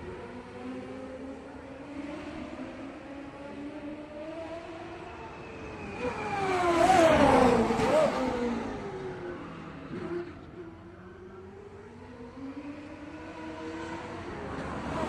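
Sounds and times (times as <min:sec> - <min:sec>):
racing car engine passing by: 0:00.0 - 0:15.0.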